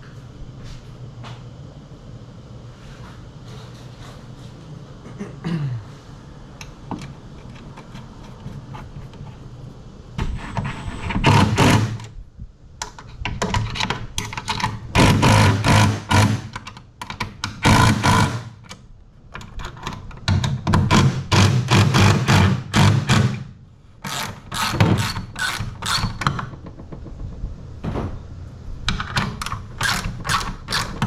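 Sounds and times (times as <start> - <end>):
power drill drilling: 24.0 - 26.2, 29.8 - 31.0.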